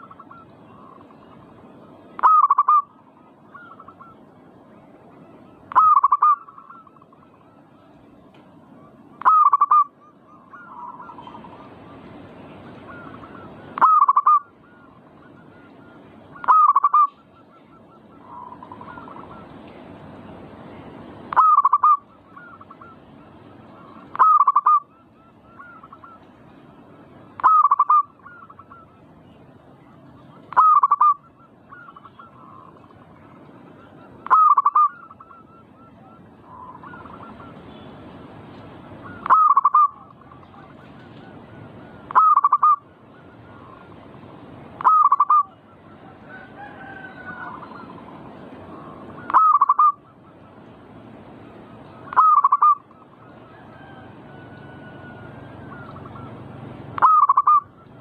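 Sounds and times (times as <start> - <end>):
dove cooing: 0.0 - 4.3, 5.5 - 8.0, 8.8 - 12.0, 12.6 - 19.6, 21.3 - 29.1, 29.8 - 37.8, 38.8 - 44.1, 44.8 - 50.7, 51.6 - 58.0
fainter dove calling: 0.0 - 4.4, 5.2 - 19.8, 21.2 - 37.9, 38.5 - 58.0
steady background noise: 0.0 - 58.0.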